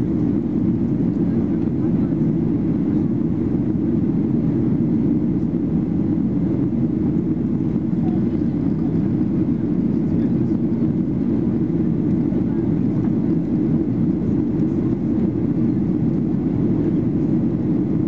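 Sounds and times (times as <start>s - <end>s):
airplane cabin drone: 0.0s - 18.0s.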